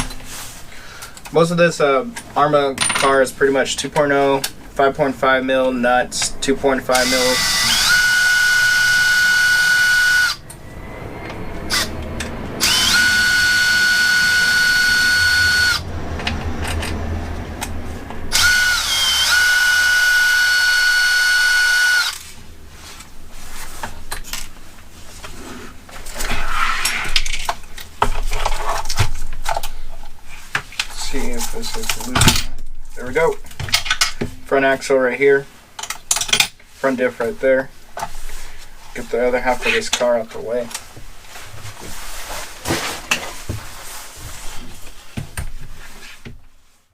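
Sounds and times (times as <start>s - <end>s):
electric screwdriver whining: 7.0s - 10.4s, 12.6s - 15.8s, 18.3s - 22.2s
parts clicking and rattling: 16.1s - 18.7s, 26.0s - 34.4s, 35.8s - 36.6s.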